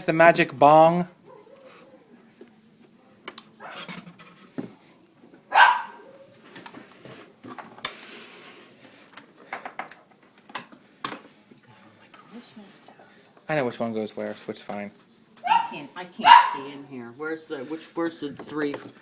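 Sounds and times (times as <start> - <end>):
dog barking: 1.3 - 2.0, 5.5 - 6.3, 15.4 - 16.8.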